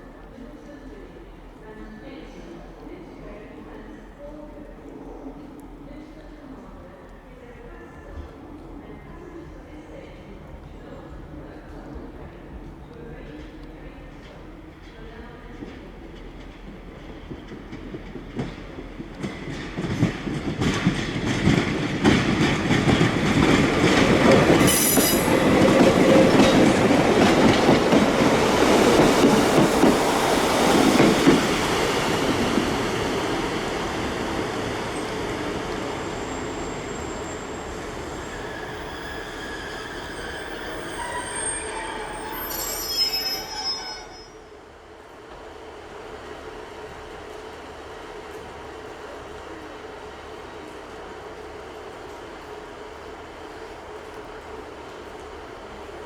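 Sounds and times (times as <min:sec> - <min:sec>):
train wheels squealing: 0:24.5 - 0:26.7, 0:34.5 - 0:44.6.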